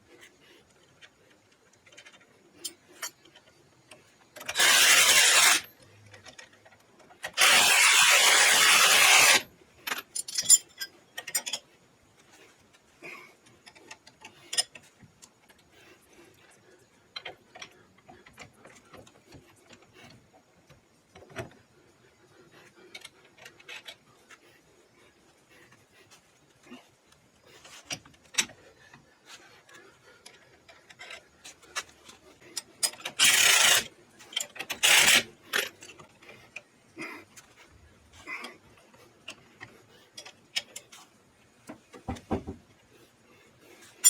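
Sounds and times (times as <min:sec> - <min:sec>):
tools clicking and knocking: 0:01.0 - 0:12.3, 0:29.7 - 0:36.7, 0:39.3 - 0:42.8.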